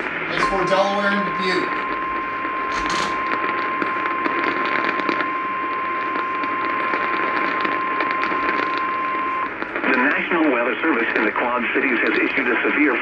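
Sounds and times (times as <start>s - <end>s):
steady high alarm tone: 0.0s - 9.6s
radio static with crackles: 0.0s - 13.0s.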